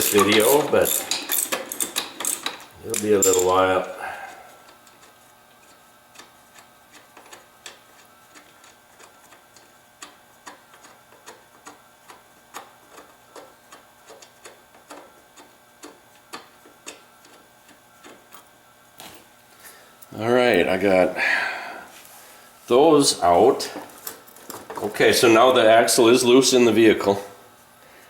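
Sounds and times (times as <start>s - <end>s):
ratchet wrench clicking: 0.0s - 3.5s.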